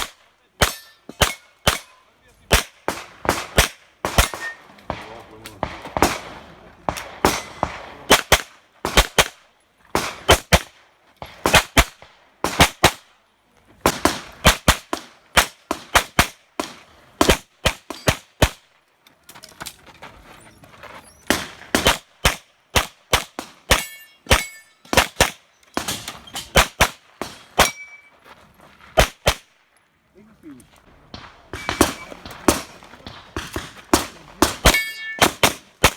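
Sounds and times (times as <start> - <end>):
rapid handgun fire: 2.5 - 9.4, 10.0 - 13.0, 21.3 - 27.8, 31.1 - 35.9.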